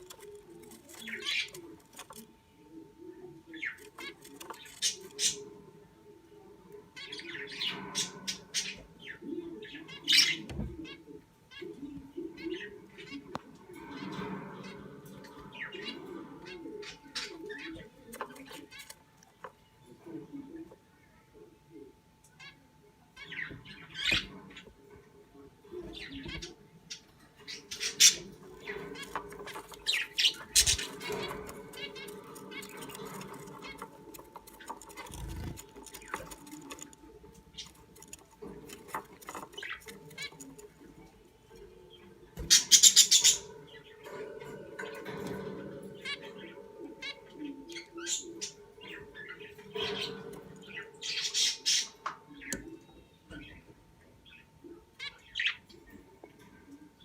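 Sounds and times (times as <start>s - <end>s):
budgerigar squawking and chirping: 42.4s - 43.5s.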